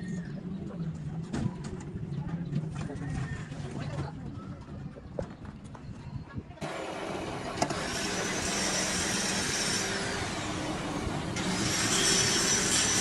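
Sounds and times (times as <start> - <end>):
machine motor running: 6.6 - 13.0.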